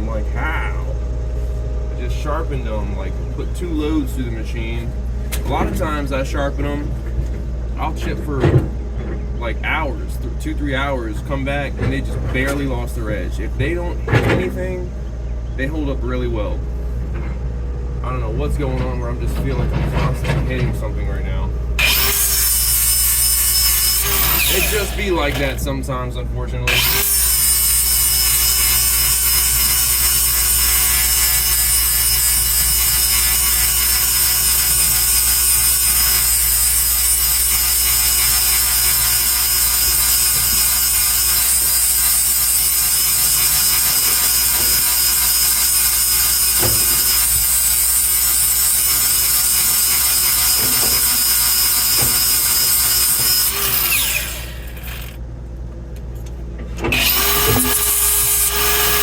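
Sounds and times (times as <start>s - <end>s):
power grinder grinding metal: 21.8s - 25.7s, 26.7s - 55.2s, 56.8s - 59.0s.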